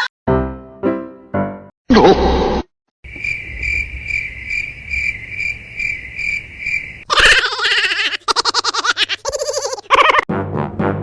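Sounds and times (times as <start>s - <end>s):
cricket chirping: 3.0s - 7.1s.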